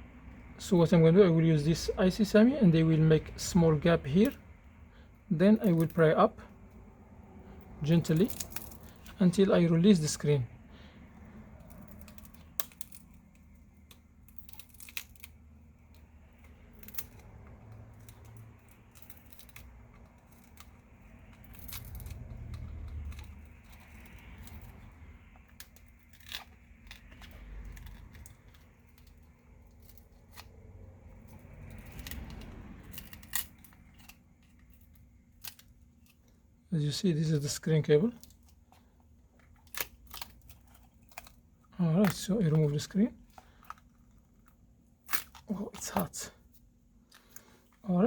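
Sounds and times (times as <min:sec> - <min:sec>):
adhesive tearing: 0:05.3 - 0:06.2, 0:07.6 - 0:47.8.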